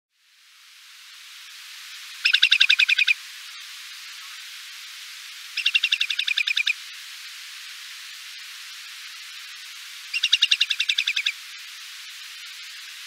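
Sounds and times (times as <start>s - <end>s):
steady background hiss: 0.1s - 13.0s
bird whistled trills: 2.2s - 3.2s, 5.6s - 6.7s, 10.2s - 11.3s.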